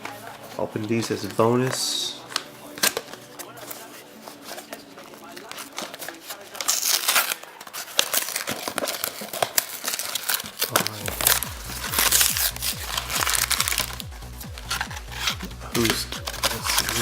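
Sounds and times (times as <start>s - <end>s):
foil wrapper crinkling and tearing: 0.0s - 17.0s
background music bass line: 11.0s - 17.0s.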